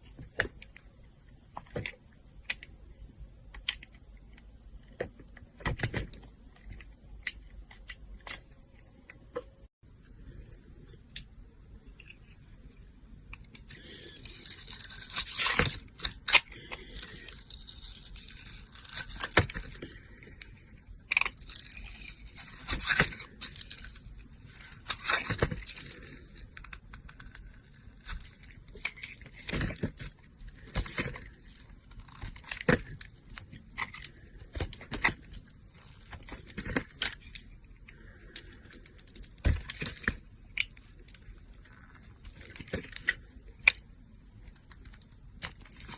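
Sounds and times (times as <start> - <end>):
knife scraping dry soap: 13.7 - 20.4.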